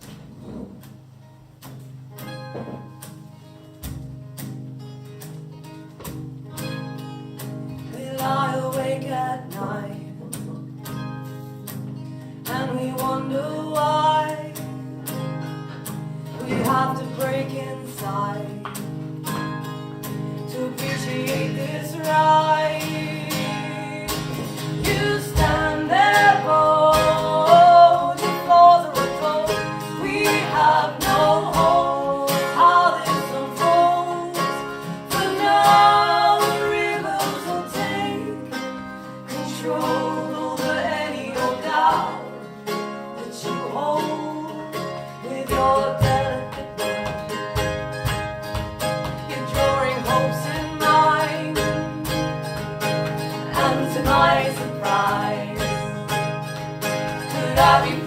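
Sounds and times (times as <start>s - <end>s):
acoustic guitar strumming: 0.0s - 58.0s
person singing: 16.4s - 18.8s, 20.5s - 42.4s, 43.2s - 47.4s, 49.3s - 52.3s, 53.3s - 56.0s, 57.2s - 58.0s.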